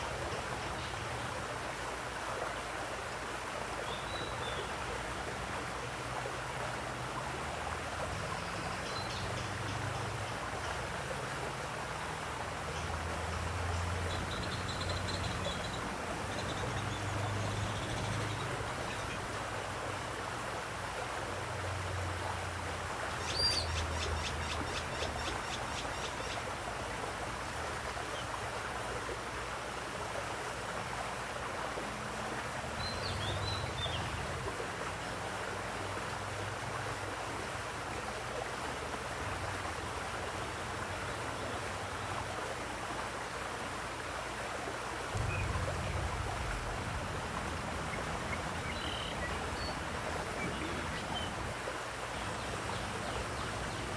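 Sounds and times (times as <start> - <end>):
flowing water rushing: 0.0 - 53.9
birdsong chirps: 12.7 - 19.3, 23.2 - 26.4, 45.2 - 51.5.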